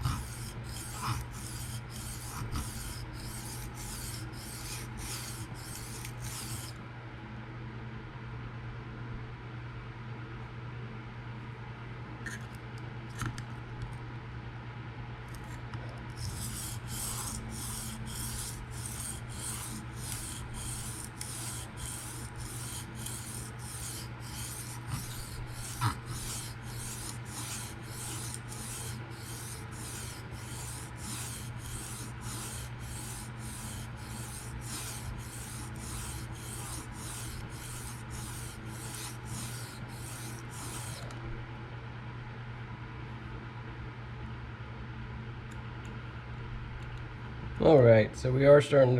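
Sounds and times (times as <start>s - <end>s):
knife scraping on sharpening stone: 0.0s - 6.7s, 16.2s - 41.0s.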